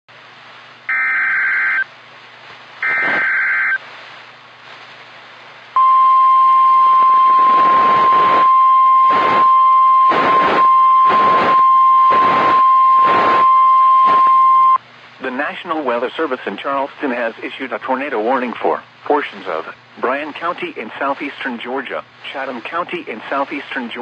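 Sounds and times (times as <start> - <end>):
surges of static noise: 0.1 - 24.0
steady alarm tone: 0.9 - 1.9, 2.8 - 3.8, 5.8 - 14.8.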